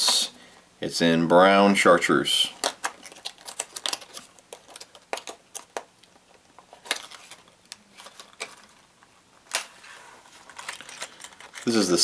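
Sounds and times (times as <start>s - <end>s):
packaging rustling: 2.6s - 12.0s.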